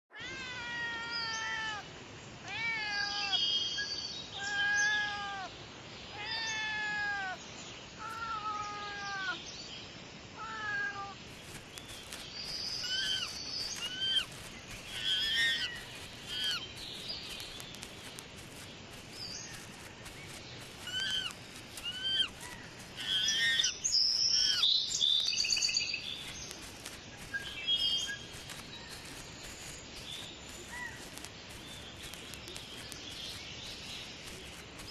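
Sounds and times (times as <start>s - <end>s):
cat meowing: 0.1s - 1.8s, 2.5s - 3.4s, 6.2s - 7.4s, 8.0s - 9.4s, 10.4s - 11.2s, 14.9s - 16.6s, 19.8s - 23.7s
high chirps and squeaks: 10.7s - 34.9s.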